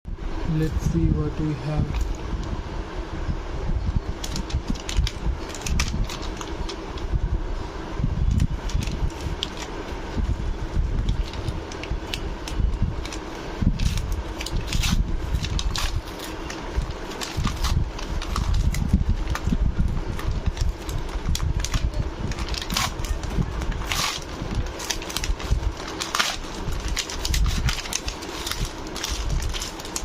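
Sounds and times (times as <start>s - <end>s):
low rumble of handling: 0.5s - 30.0s
plastic packaging clicks and rustles: 4.2s - 6.8s, 8.4s - 9.7s, 11.0s - 30.0s.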